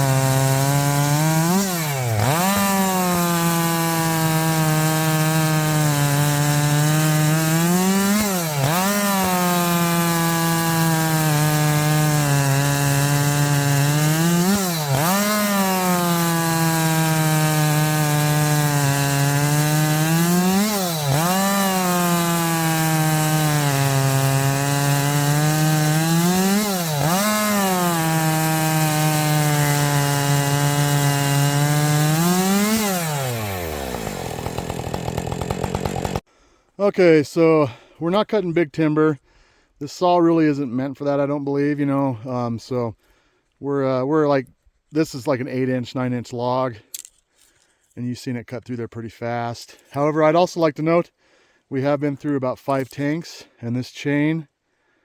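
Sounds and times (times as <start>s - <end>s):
chainsaw cutting log: 0.0s - 36.4s.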